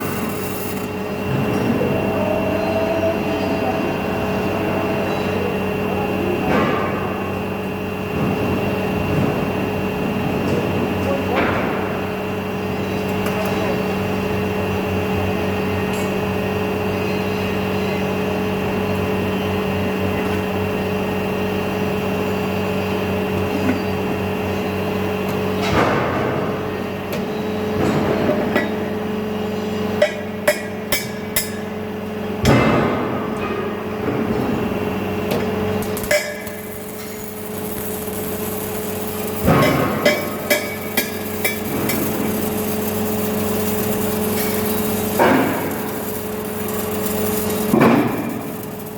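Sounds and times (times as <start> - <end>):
industrial machinery humming: 0.0 - 48.9
sharp metal clanks and knocks: 35.8 - 48.9.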